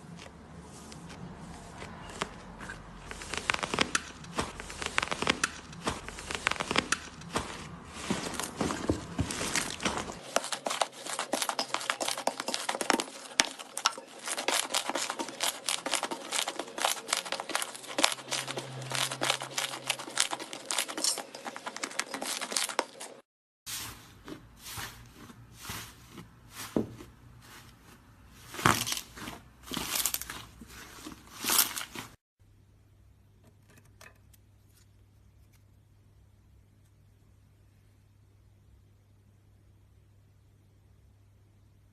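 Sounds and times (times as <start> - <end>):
slime crackling and popping: 3.1 - 7.4, 10.4 - 21.2.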